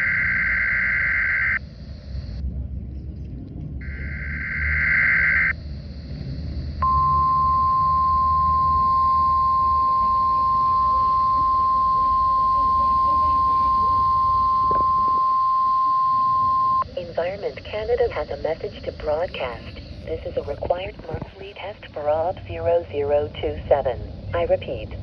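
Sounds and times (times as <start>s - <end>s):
low static: 0.0s - 2.4s, 3.8s - 25.0s
weather radio alarm tone: 0.0s - 2.4s, 3.8s - 24.9s
digital data buzzing burst: 3.8s - 15.2s.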